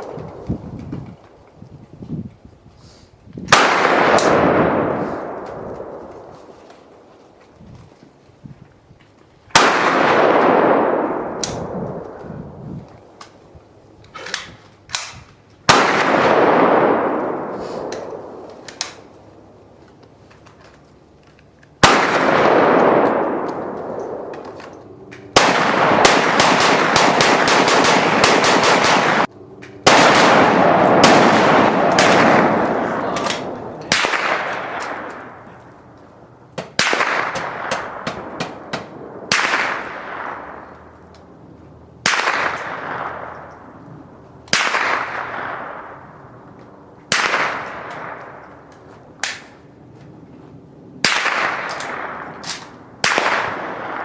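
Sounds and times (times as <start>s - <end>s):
gunfire with echo: 3.5s - 6.5s, 9.5s - 12.1s, 15.7s - 19.1s, 21.8s - 35.5s, 36.6s - 40.8s, 42.0s - 43.8s, 44.5s - 46.3s, 47.1s - 48.5s, 51.0s - 54.0s.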